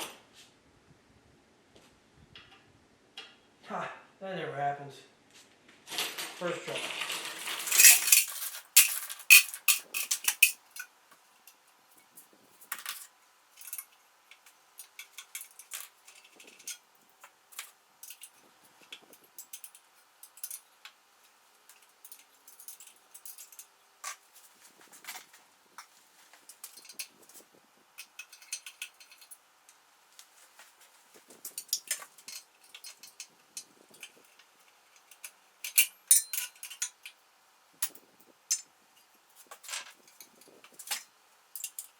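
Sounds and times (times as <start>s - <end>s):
metal tools clinking: 6.8s - 10.8s, 21.7s - 24.2s, 28.0s - 29.4s, 31.4s - 37.2s.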